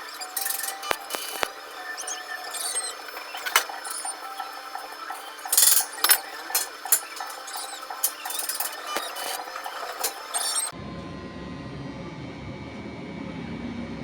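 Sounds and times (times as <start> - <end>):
hand tools clinking on metal: 0.0 - 10.7
metal parts clattering: 0.1 - 10.7.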